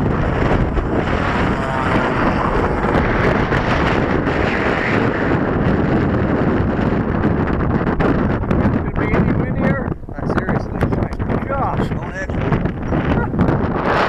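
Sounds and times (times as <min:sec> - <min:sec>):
model plane engine in flight: 0:00.0 - 0:08.5
gusty wind buffeting microphone: 0:00.0 - 0:14.0.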